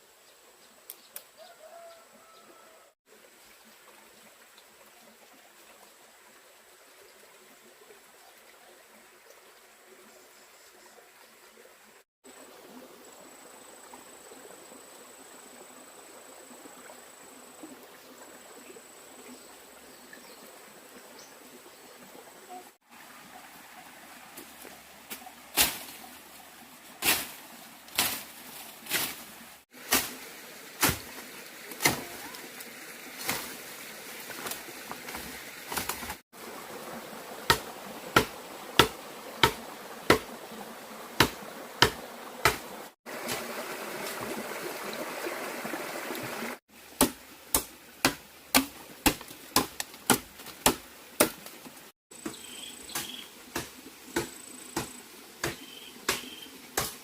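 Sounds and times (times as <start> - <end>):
hand tool striking wood: 37.5 - 40.3, 41.2 - 42.6, 47.0 - 51.5, 52.2 - 57.0.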